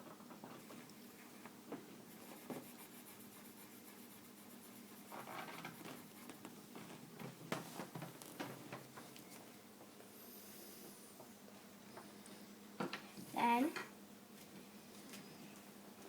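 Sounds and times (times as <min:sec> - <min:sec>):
pencil scratching on paper: 0:02.0 - 0:06.6.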